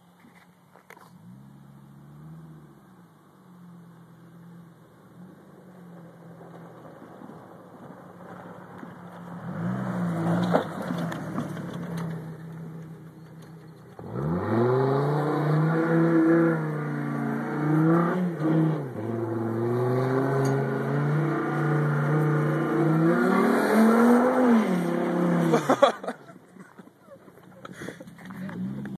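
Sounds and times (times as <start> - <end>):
pickup engine revving: 1.1 - 26.2.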